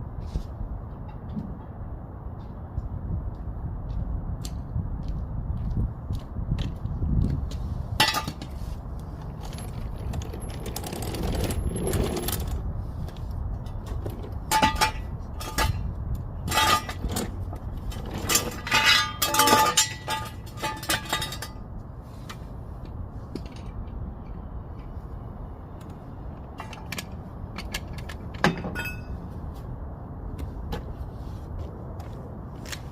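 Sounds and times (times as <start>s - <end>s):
metal tools clinking and clattering: 9.2s - 12.5s, 18.0s - 21.6s.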